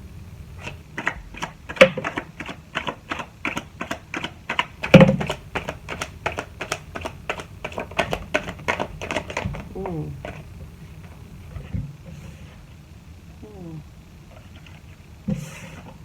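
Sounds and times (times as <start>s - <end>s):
cards being shuffled: 3.8s - 11.4s.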